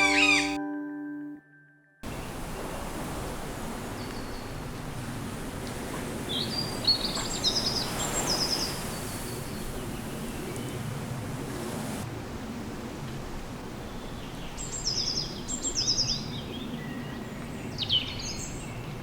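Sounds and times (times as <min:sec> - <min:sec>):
birds chirping and trilling: 0:00.0 - 0:00.6.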